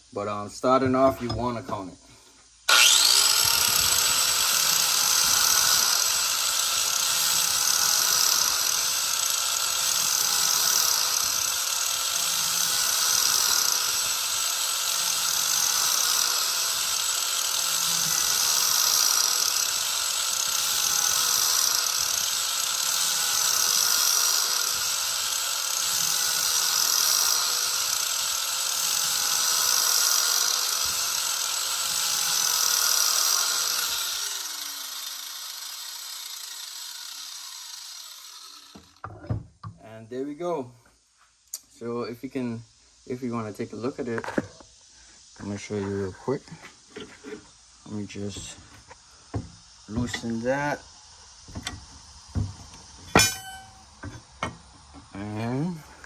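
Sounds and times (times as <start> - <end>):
angle grinder grinding steel: 2.7 - 39.1, 45.4 - 56.0.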